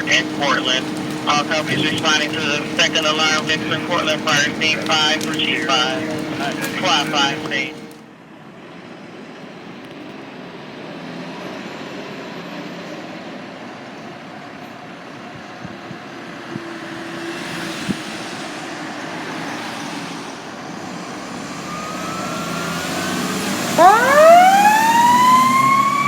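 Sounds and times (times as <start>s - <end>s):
fire engine rumble: 0.0s - 8.1s, 20.7s - 26.0s
siren rising wail: 21.4s - 26.0s.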